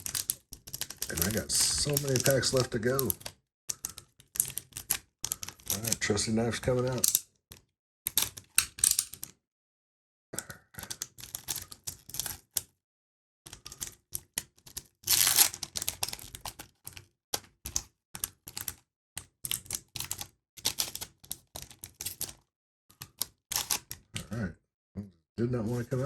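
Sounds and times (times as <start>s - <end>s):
knife cutting plastic wrapper: 0.9s - 3.2s
wrapper tearing: 1.1s - 3.1s.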